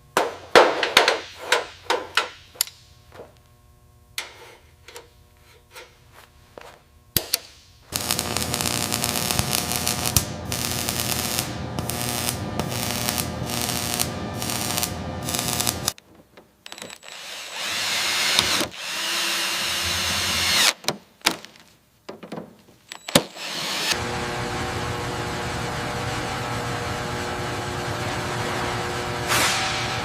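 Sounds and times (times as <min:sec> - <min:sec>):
quiet hum: 0:00.0 - 0:17.7
power tool running: 0:07.9 - 0:16.0, 0:17.0 - 0:20.8, 0:23.2 - 0:30.0.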